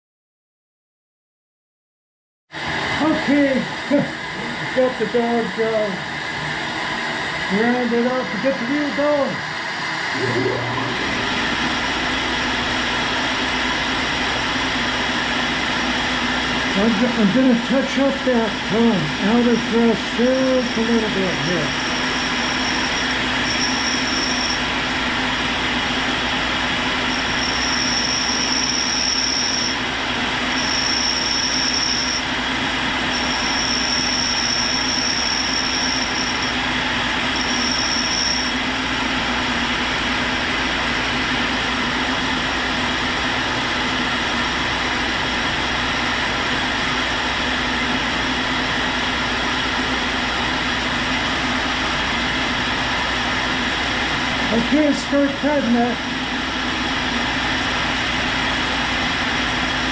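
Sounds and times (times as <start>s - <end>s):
grinder humming and hissing: 2.7s - 59.9s
thin high-pitched whine: 16.8s - 24.7s, 27.0s - 29.8s, 30.5s - 32.4s, 33.1s - 36.7s, 37.3s - 38.6s.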